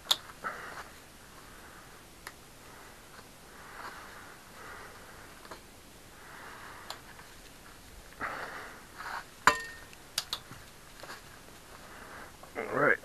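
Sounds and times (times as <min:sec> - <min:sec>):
soft breathing: 0:00.3 - 0:09.4, 0:11.0 - 0:12.5
bicycle parts clinking: 0:09.4 - 0:11.2.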